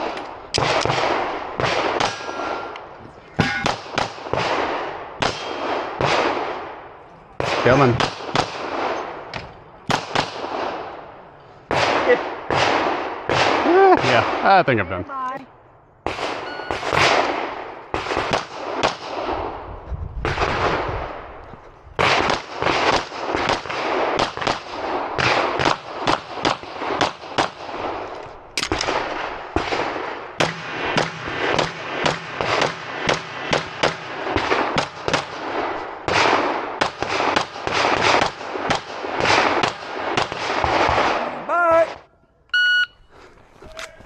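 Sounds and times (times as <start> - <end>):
pistol shots with echo: 0.0 - 9.3, 9.9 - 11.1, 11.7 - 14.6, 16.1 - 19.6, 22.0 - 28.0, 28.6 - 41.5.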